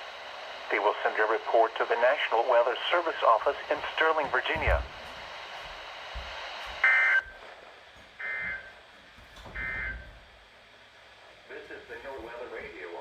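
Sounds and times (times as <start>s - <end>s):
faint radio hiss: 0.0s - 7.8s, 11.2s - 13.0s.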